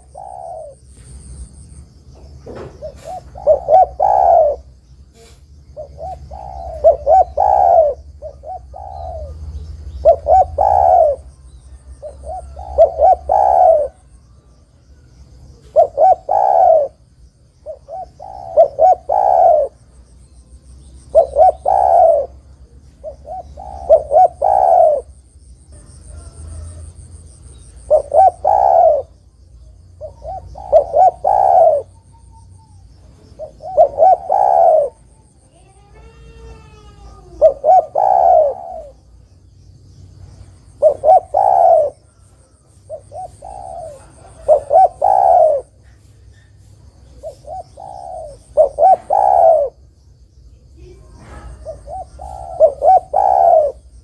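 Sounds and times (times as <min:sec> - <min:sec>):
dove cooing: 0:00.0 - 0:01.4, 0:02.2 - 0:14.6, 0:15.4 - 0:19.9, 0:21.0 - 0:39.2, 0:40.6 - 0:49.8, 0:50.8 - 0:54.0.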